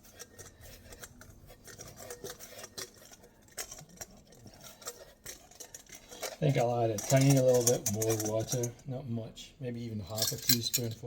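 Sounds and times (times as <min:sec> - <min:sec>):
hands kneading sticky dough: 0:00.0 - 0:08.5.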